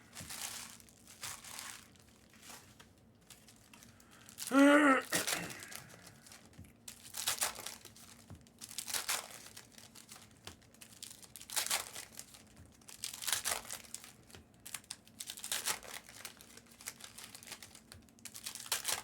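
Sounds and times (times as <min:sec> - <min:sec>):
card pack wrappers crinkling and tearing: 0:00.0 - 0:19.0.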